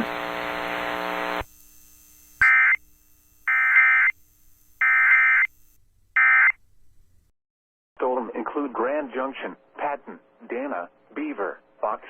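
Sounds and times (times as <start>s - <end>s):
buzzy digital data bursts: 0.0s - 6.5s
steady buzzing tone: 0.0s - 6.5s.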